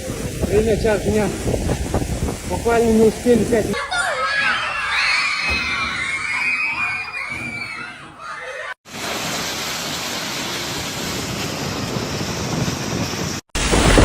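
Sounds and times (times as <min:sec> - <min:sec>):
rushing water: 0:00.0 - 0:06.4, 0:08.9 - 0:14.0
people screaming and shouting: 0:03.8 - 0:08.8.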